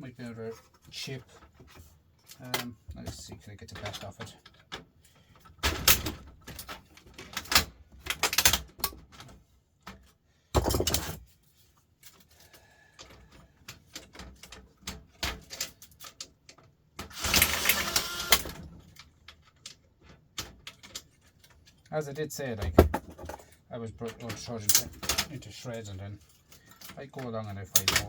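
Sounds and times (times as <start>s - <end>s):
plastic parts knocking: 10.6s - 11.2s, 22.6s - 23.5s.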